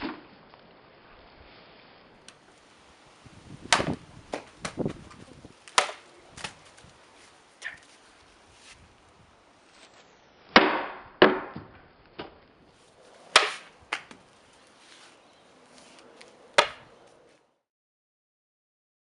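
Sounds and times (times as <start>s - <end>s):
sharp impacts: 13.3s - 14.1s.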